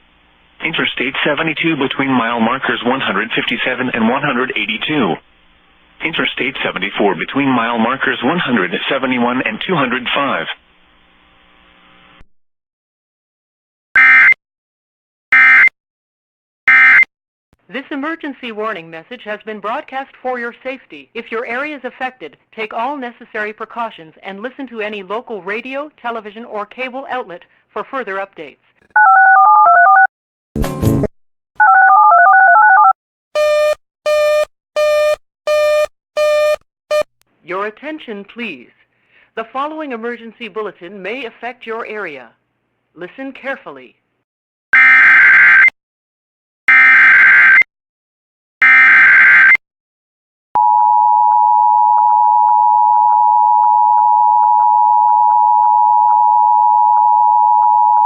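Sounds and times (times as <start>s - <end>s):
touch-tone beeps: 50.6s - 58.0s.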